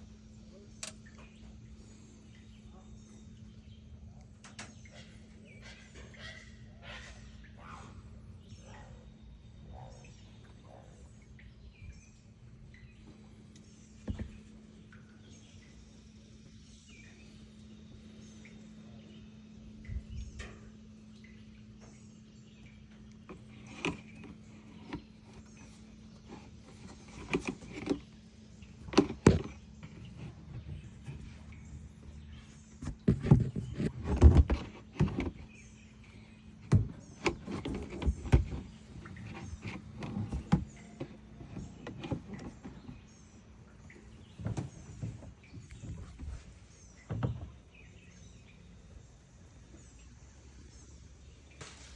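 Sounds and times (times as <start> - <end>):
faint steady hum: 0.0 - 51.9
small birds chirping: 0.0 - 51.9
dull knocks and handling: 14.0 - 14.5, 23.3 - 28.1, 28.8 - 35.5, 36.6 - 43.1
sharp knocks and clicks: 28.8 - 31.3, 32.8 - 35.5.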